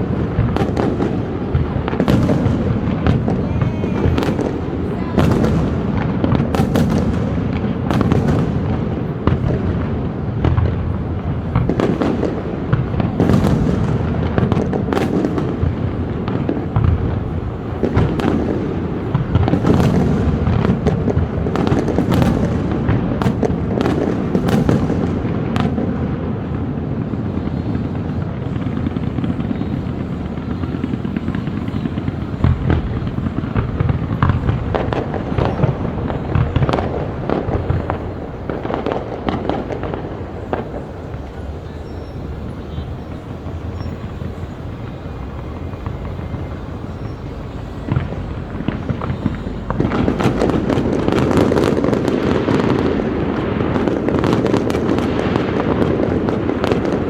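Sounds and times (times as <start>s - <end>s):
rumble of overlapping explosions: 0.0s - 41.4s
fireworks bangs and cracks: 0.0s - 57.0s.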